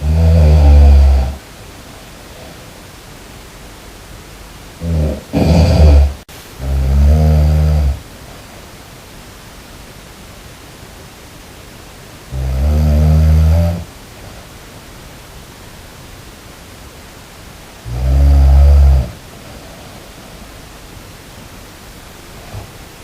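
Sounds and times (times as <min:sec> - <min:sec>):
person snoring: 0:00.0 - 0:01.4, 0:04.8 - 0:08.0, 0:12.3 - 0:13.9, 0:17.8 - 0:20.4
steady hiss: 0:00.0 - 0:23.0.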